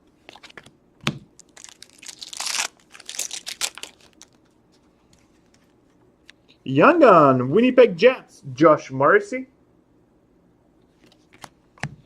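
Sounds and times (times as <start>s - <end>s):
cards rustling and clicking: 0.2s - 0.7s, 1.4s - 5.8s, 11.0s - 12.0s
wrapper crinkling and tearing: 1.4s - 4.5s.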